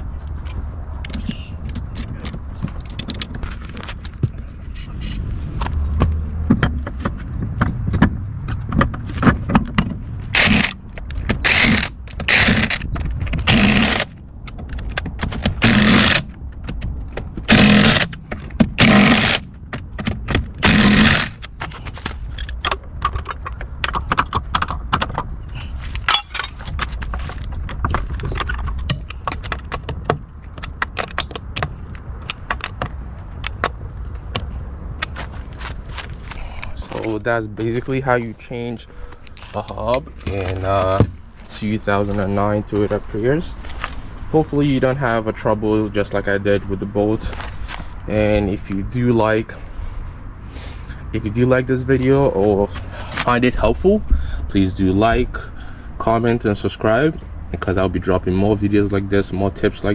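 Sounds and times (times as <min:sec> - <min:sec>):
metal tools clinking and scraping: 0:20.7 - 0:31.4, 0:39.3 - 0:42.1.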